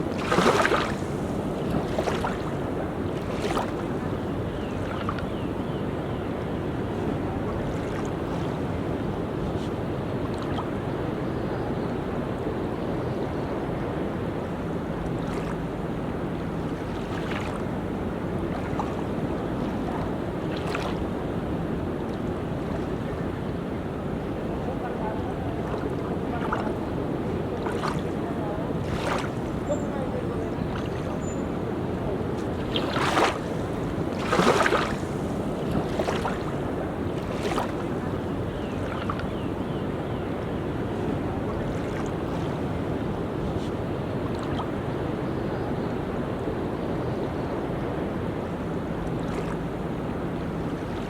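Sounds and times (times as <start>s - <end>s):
ocean waves washing: 0.0s - 51.0s
wind on microphone: 0.0s - 51.0s.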